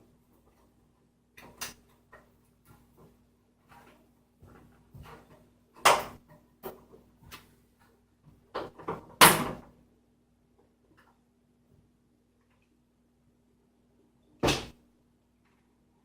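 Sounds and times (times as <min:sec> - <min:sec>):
loud sharp knocks: 0:14.4 - 0:14.8.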